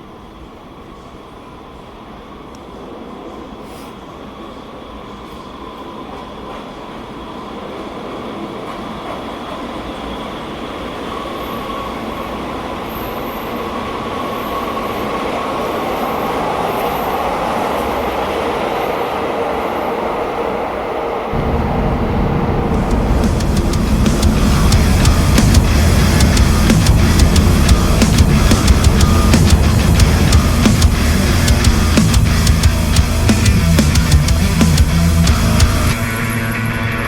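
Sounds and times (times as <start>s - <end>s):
train rumbling: 0.0s - 37.0s
thin steady whine: 21.4s - 37.0s.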